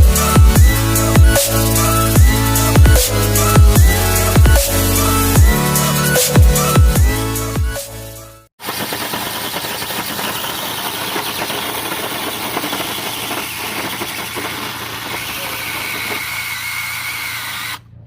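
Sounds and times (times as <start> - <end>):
car engine running: 8.6 - 18.0.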